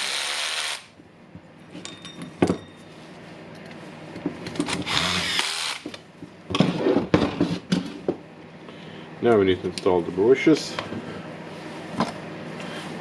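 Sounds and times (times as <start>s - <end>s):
power screwdriver running: 0.0s - 0.8s, 4.8s - 5.8s.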